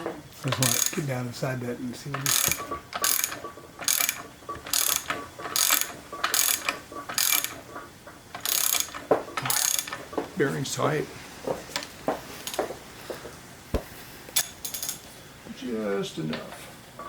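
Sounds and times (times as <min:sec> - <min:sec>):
ratchet wrench clicking: 0:00.6 - 0:01.0, 0:02.2 - 0:07.6, 0:08.4 - 0:10.0
single knock: 0:13.7 - 0:13.9.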